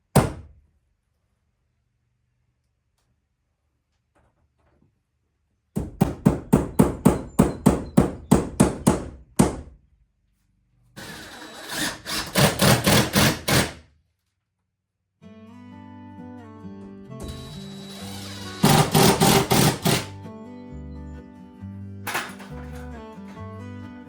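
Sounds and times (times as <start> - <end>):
hammer driving nails into wood: 0.1 - 0.5, 5.8 - 9.7, 11.0 - 13.9, 18.6 - 20.1.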